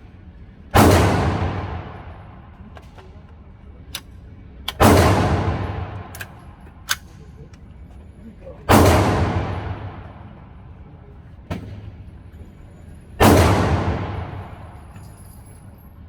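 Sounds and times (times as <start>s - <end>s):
loud gunshot with echo: 0.8s - 2.2s, 4.8s - 6.1s, 8.7s - 10.2s, 13.2s - 14.7s.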